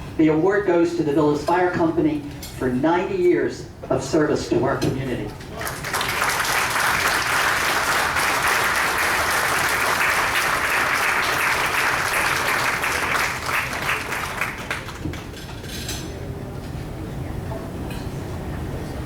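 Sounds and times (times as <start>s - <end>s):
audience applauding: 5.5s - 15.4s.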